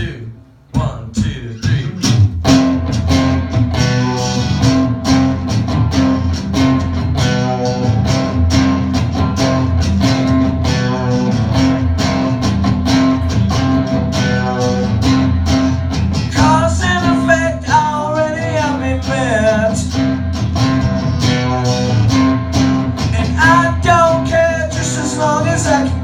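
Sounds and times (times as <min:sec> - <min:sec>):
strummed guitars: 0:00.0 - 0:26.0
low bass line: 0:01.7 - 0:26.0.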